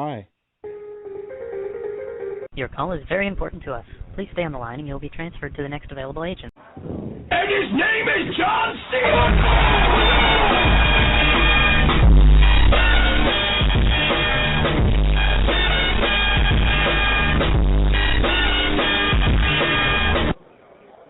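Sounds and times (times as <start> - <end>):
rock music over a phone line: 9.1 - 20.4.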